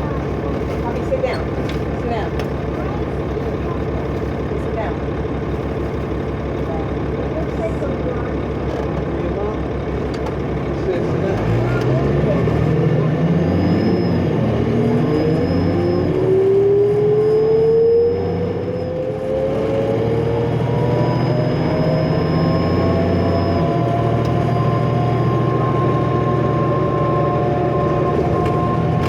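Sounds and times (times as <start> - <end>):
diesel bus engine accelerating: 0.0 - 29.0
turbocharger whine: 10.8 - 29.0.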